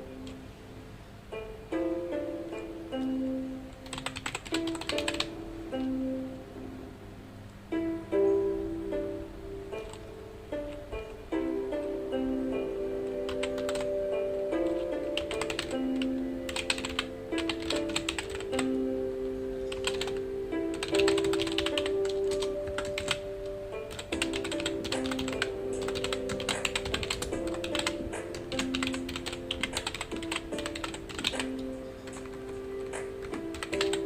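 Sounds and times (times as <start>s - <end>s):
soft music of held notes: 0.0s - 34.0s
keyboard typing: 3.7s - 5.4s, 13.1s - 18.8s, 19.7s - 34.0s.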